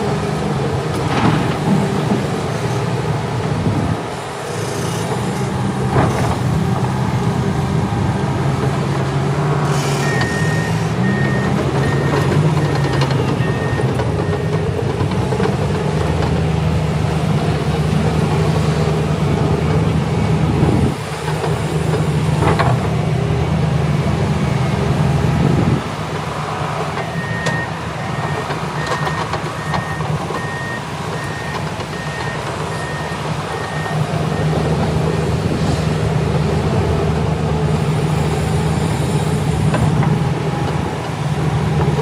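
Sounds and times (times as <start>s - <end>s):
diesel engine running: 0.0s - 42.0s
backup alarm beeps: 10.0s - 14.7s, 27.0s - 34.6s.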